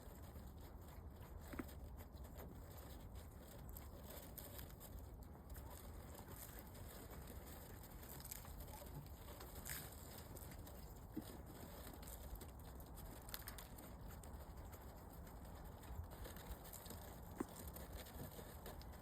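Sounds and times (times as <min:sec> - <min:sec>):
soft rustles: 0:00.0 - 0:19.0.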